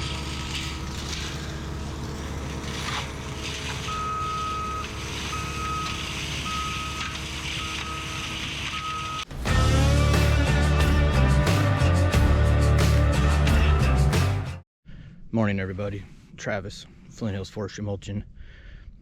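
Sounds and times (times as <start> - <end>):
heavy machine engine running: 0.0 - 10.8
reversing alarm beeps: 3.8 - 9.3
music: 9.3 - 14.6.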